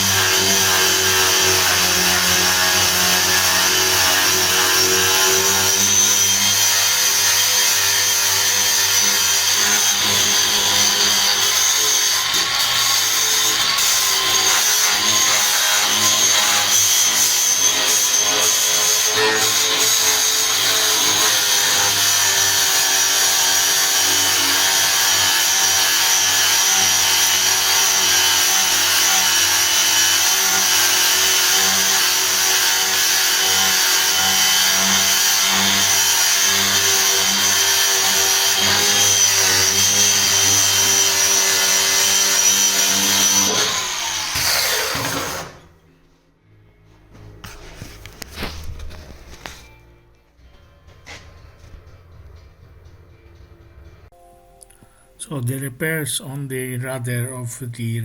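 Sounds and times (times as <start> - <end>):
electric sander grinding fiberglass: 0.0 - 45.6.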